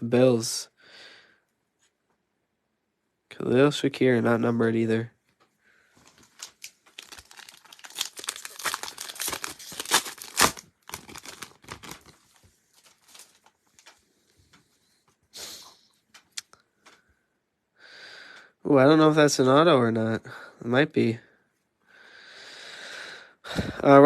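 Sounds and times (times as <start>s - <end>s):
wrapper crinkling and tearing: 6.0s - 14.0s.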